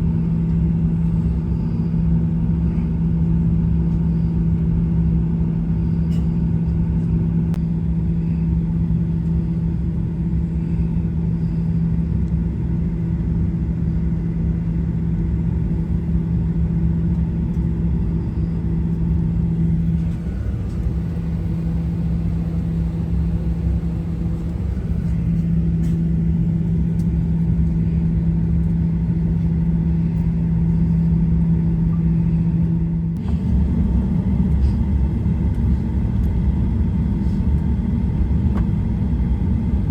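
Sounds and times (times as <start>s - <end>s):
aircraft cabin rumble and hum: 0.0s - 39.9s.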